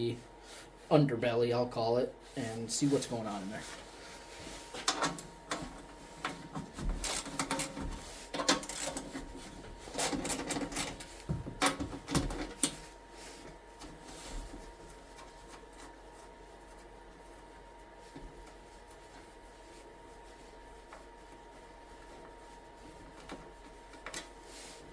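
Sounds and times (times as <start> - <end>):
faint shuffling: 0.1 - 7.1.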